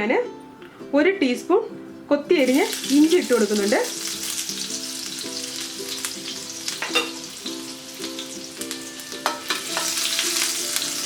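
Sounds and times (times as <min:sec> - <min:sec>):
ginger sizzling in hot ghee: 0:02.3 - 0:11.0
spoon knocking against pan: 0:06.8 - 0:07.2, 0:09.2 - 0:10.0.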